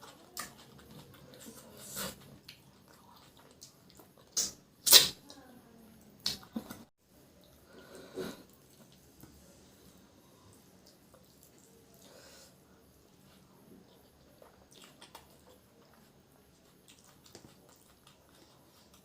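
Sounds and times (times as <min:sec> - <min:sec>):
person chewing wetly: 0:00.0 - 0:04.6, 0:10.5 - 0:12.1, 0:13.1 - 0:19.0.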